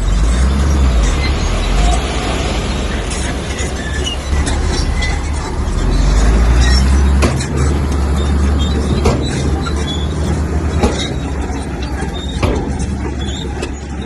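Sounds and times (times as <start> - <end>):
bulldozer diesel engine rumbling: 0.0 - 14.0
sharp knocks: 6.4 - 13.8.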